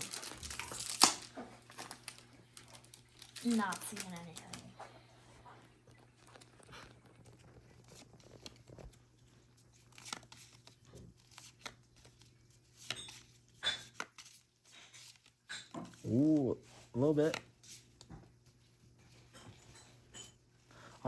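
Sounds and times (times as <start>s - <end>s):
foil pack crinkling and tearing: 0.0s - 4.7s
cards rustling and tapping: 0.0s - 4.8s, 7.1s - 20.0s.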